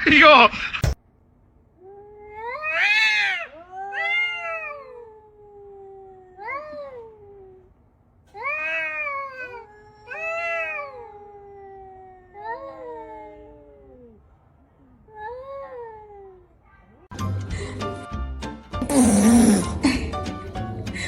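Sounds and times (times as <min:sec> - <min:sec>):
cats meowing and yowling: 0:01.8 - 0:07.7, 0:08.3 - 0:14.2, 0:15.1 - 0:16.6.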